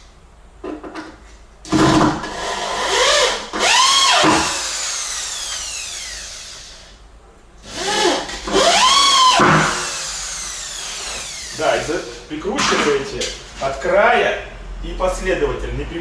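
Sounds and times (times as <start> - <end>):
drill driving screw into wood: 1.7 - 6.9, 7.6 - 12.2.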